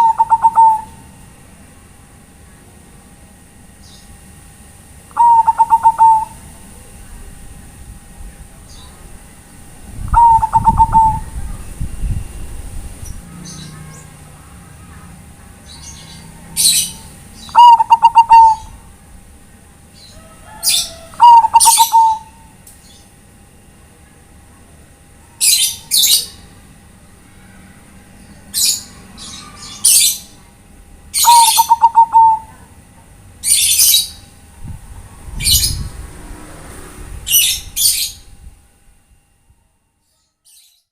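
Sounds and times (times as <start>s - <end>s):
dove cooing: 0.0s - 1.0s, 5.1s - 6.6s, 10.0s - 11.8s, 13.1s - 19.0s, 20.0s - 22.6s, 31.2s - 32.8s
high-pitched bird chirps: 0.0s - 1.0s, 5.1s - 6.4s, 10.1s - 11.6s, 15.6s - 18.8s, 20.0s - 23.0s, 31.2s - 32.6s.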